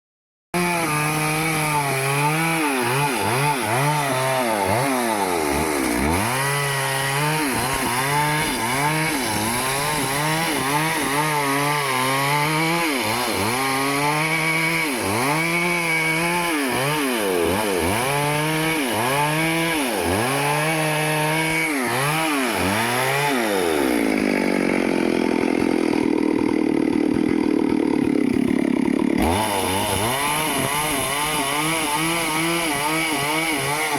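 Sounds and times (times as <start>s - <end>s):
chainsaw cutting wood: 0.6s - 33.9s.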